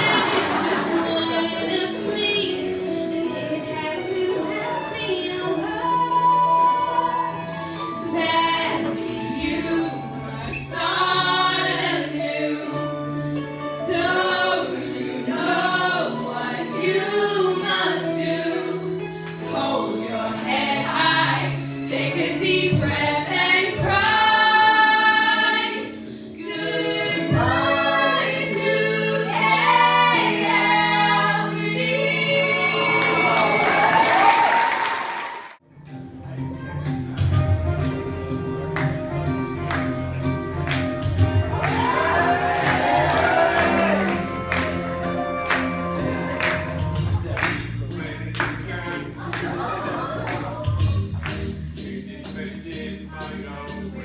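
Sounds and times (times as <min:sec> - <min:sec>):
group of voices singing: 0:00.0 - 0:34.2, 0:41.2 - 0:54.0
musical accompaniment: 0:00.0 - 0:34.7, 0:35.6 - 0:54.0.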